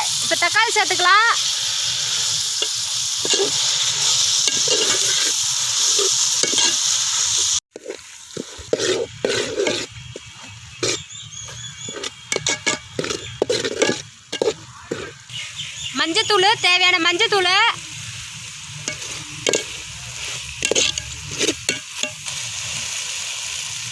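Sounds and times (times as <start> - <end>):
onions sizzling in hot oil: 0.0 - 23.9
spoon stirring in a pan: 2.6 - 3.6, 4.4 - 6.9, 7.7 - 15.2, 18.8 - 22.3
spoon clinking and scraping pan: 2.6 - 3.8, 4.4 - 7.0, 7.8 - 15.2, 18.8 - 22.4.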